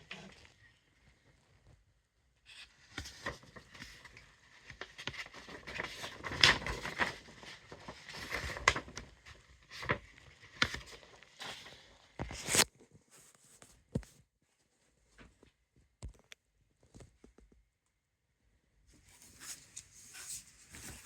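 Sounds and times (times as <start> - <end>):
packaging rustling and crinkling: 19.2 - 21.0.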